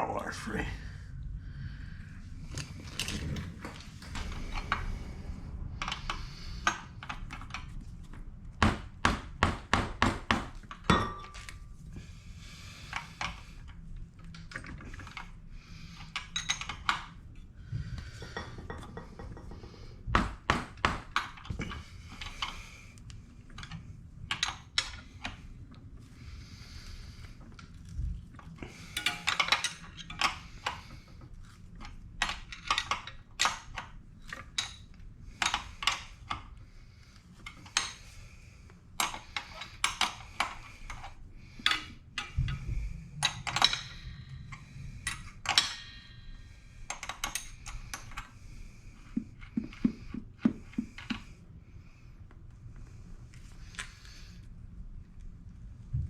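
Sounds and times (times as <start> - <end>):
metal tools clinking and clattering: 2.6 - 4.9, 28.9 - 30.4, 43.2 - 48.3.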